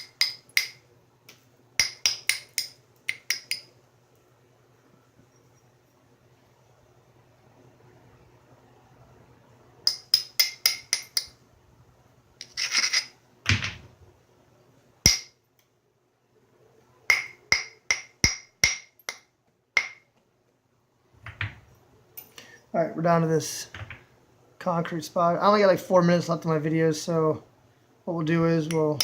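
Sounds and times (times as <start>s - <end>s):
hammerstone tapping stone: 0.0s - 0.8s, 1.8s - 3.7s, 9.9s - 11.4s, 15.1s - 15.4s, 17.1s - 20.2s, 28.7s - 29.0s
stone scraping: 12.4s - 13.2s.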